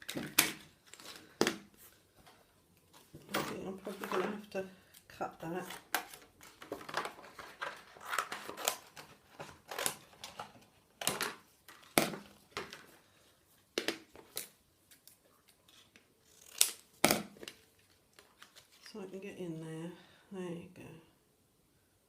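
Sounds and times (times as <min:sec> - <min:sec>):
paper rustling: 0:05.6 - 0:10.6, 0:17.4 - 0:18.9.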